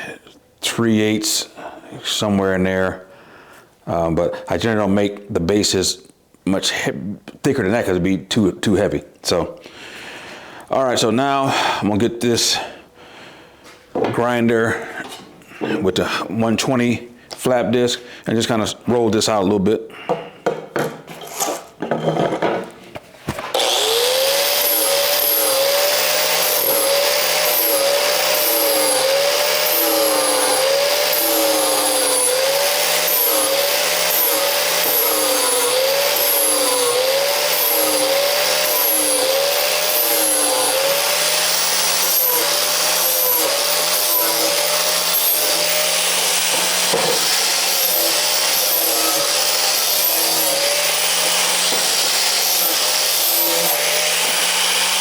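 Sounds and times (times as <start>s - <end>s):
angle grinder smoothing steel: 23.4s - 55.0s.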